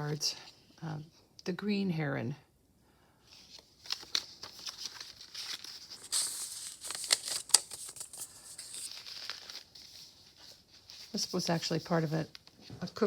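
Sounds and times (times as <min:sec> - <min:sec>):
paper rustling and crinkling: 0:03.3 - 0:13.0.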